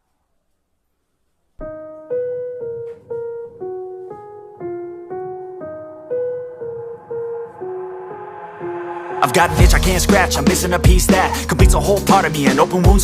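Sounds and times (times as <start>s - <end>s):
piano melody single notes: 1.6s - 11.1s.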